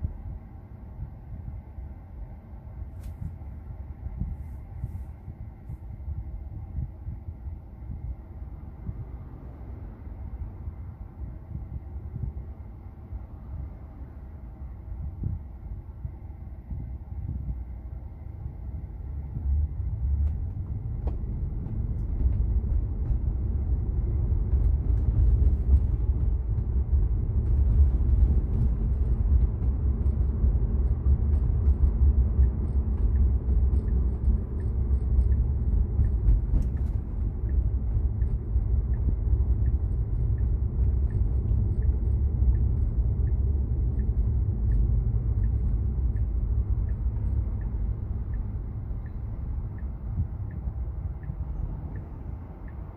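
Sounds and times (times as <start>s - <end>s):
road and tyre rumble: 0.0s - 52.9s.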